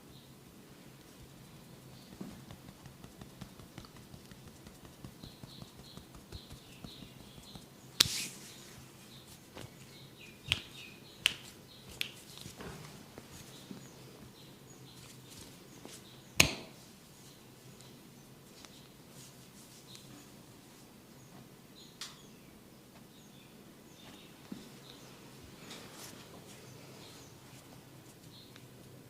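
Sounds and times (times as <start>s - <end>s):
hands rubbing head: 1.2s - 8.6s
light tapping: 2.0s - 7.7s
sharp hand smacks: 10.4s - 12.2s, 16.4s - 16.8s.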